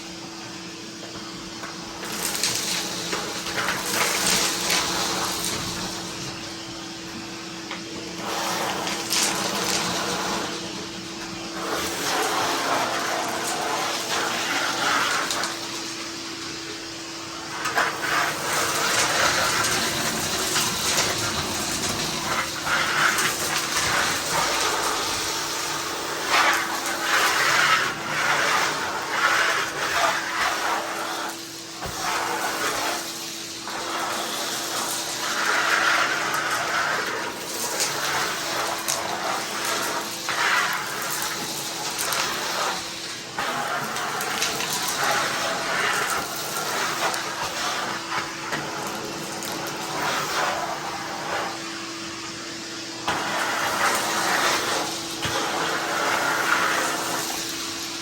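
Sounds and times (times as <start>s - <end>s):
shop vacuum running: 0.0s - 58.0s
debris rattling up vacuum hose: 17.6s - 50.8s.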